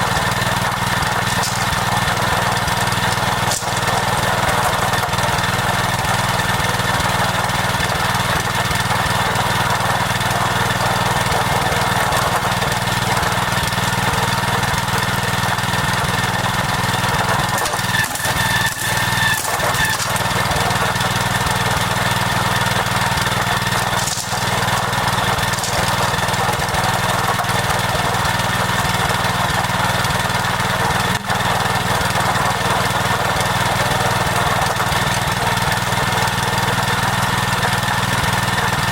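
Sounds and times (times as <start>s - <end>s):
small engine running: 0.0s - 38.9s.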